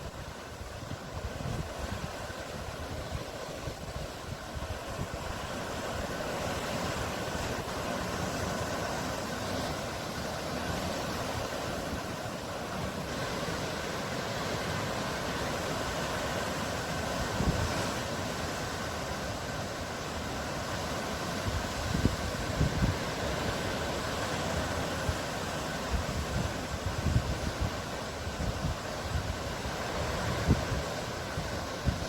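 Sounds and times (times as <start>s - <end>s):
surf rushing: 0.0s - 32.0s.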